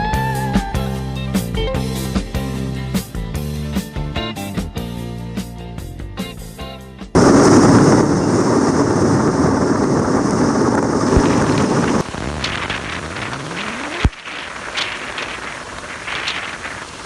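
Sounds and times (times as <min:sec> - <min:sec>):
rushing water roar: 0:07.2 - 0:17.0.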